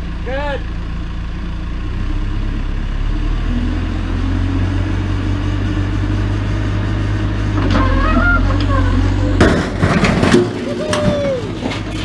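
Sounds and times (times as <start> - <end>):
diesel engine droning: 0.0 - 12.0.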